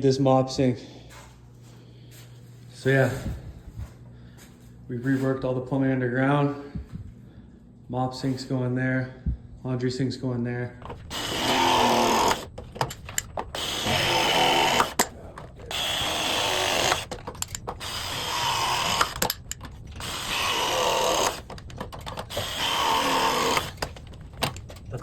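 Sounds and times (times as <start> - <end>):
power tool running: 10.9 - 24.6
clicks and small knocks: 21.4 - 22.3.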